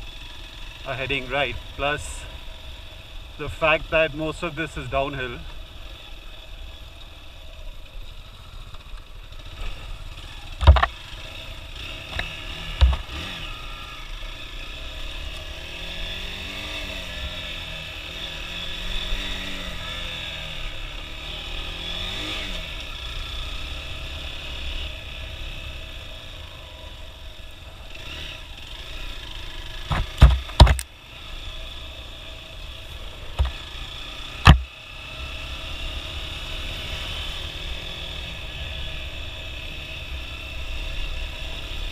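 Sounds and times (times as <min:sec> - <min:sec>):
motorcycle engine running: 0:00.0 - 0:41.9
sharp knocks: 0:10.6 - 0:10.9, 0:29.9 - 0:30.8, 0:34.4 - 0:34.7.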